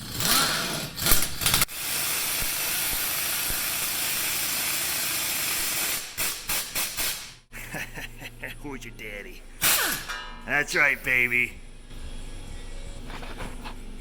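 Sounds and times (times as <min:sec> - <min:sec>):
impact wrench running: 0:00.0 - 0:07.4.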